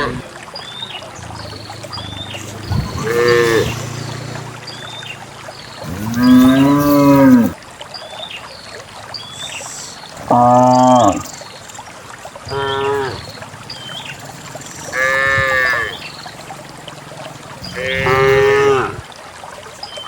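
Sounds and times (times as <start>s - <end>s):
cattle mooing: 0.0s - 0.2s, 1.2s - 4.5s, 5.8s - 7.6s, 10.2s - 11.3s, 12.5s - 13.2s, 14.8s - 19.0s.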